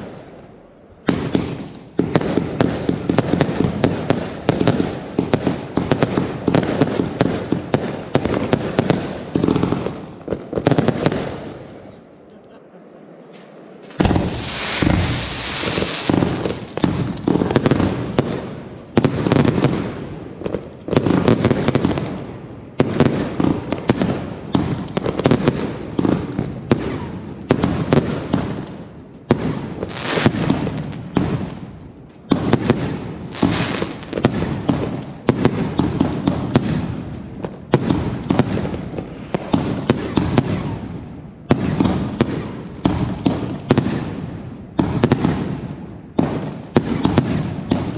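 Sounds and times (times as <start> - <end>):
fireworks shells bursting: 13.8 - 17.6.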